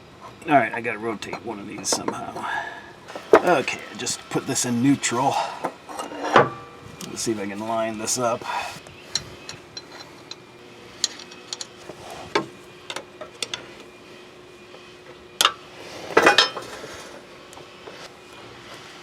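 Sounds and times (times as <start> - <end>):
metal parts clinking and knocking: 11.0 - 11.7.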